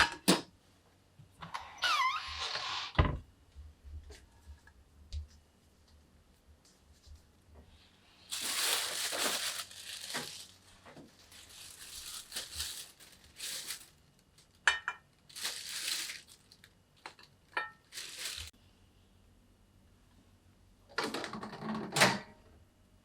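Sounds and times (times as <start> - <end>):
food packaging crinkling: 8.3 - 18.5.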